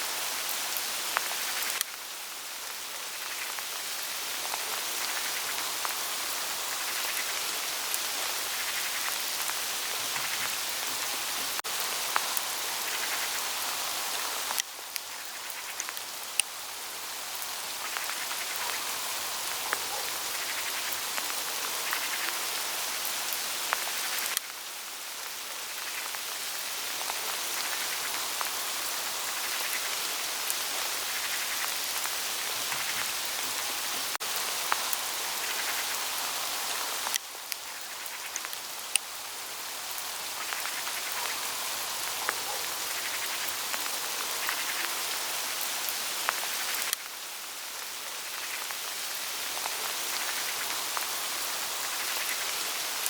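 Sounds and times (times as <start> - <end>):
hail pattering on leaves: 0.1 - 53.0
sharp hail ticks: 0.5 - 2.0, 17.4 - 24.6, 39.9 - 47.1.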